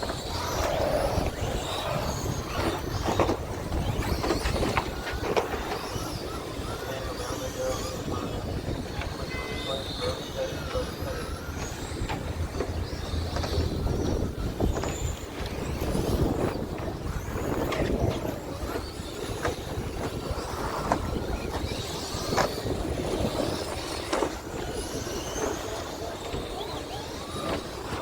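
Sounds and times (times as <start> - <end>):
tyre noise on asphalt: 0.0 - 5.6
electric motor whines: 0.0 - 28.0.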